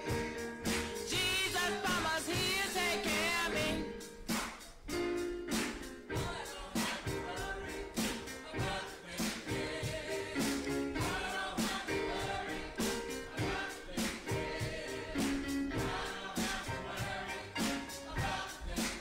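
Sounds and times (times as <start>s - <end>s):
gospel choir singing with band: 0.0s - 19.0s
steady beat of sharp hits: 0.0s - 19.0s.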